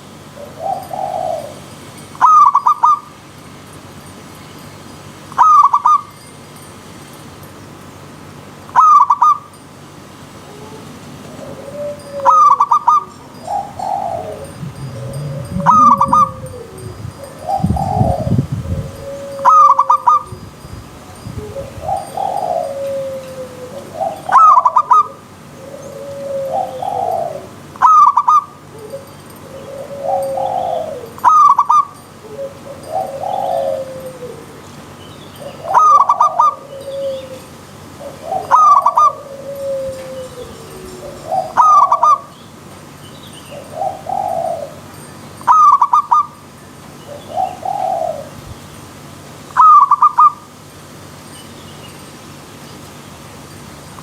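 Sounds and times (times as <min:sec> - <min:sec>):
doves cooing: 0:00.0 - 0:03.0, 0:10.4 - 0:20.3, 0:21.4 - 0:42.3, 0:43.5 - 0:44.9, 0:47.1 - 0:48.4.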